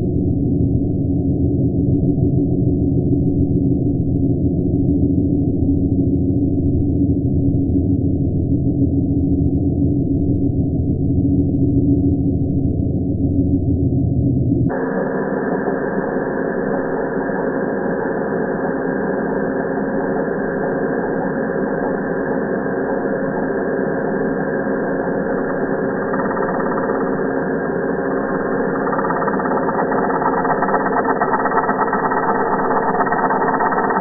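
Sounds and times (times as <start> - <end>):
slowed angle grinder drone: 14.7 - 34.0.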